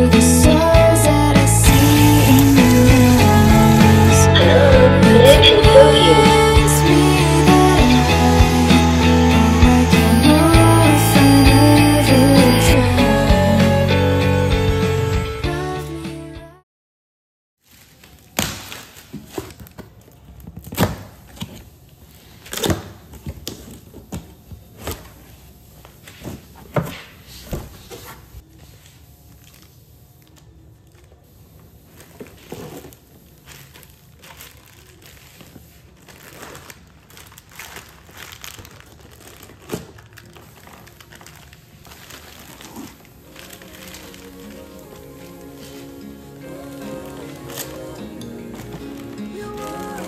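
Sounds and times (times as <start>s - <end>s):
plastic packaging crinkling and tearing: 17.6s - 25.4s, 29.3s - 50.0s.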